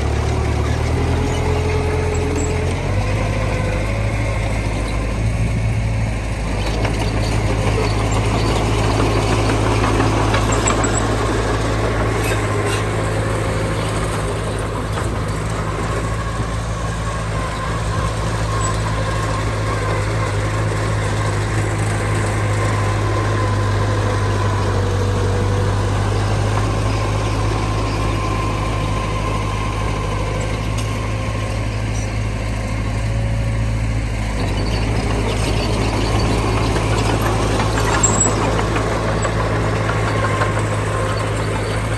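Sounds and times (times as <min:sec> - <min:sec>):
diesel engine running: 0:00.0 - 0:41.9.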